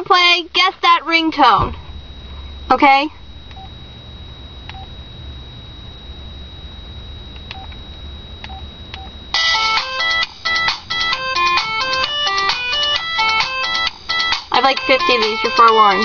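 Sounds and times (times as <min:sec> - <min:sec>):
polyphonic ringtone melody: 0:09.3 - 0:16.0.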